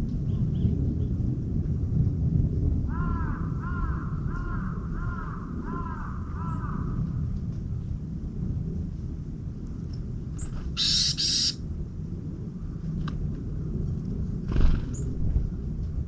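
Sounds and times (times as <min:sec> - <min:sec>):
steady low rumble: 0:00.0 - 0:16.0
faint high bird chirps: 0:10.4 - 0:11.6
harsh raspy bird calls: 0:10.4 - 0:11.6.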